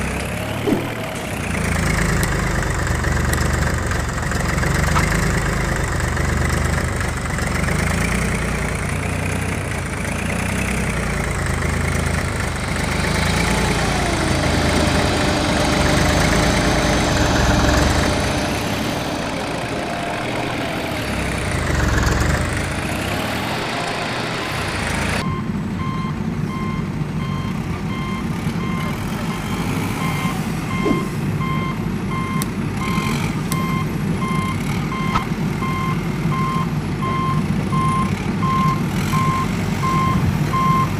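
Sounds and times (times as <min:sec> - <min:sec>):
heavy vehicle engine whining: 0:00.0 - 0:40.9
reversing alarm beeping: 0:25.2 - 0:40.9.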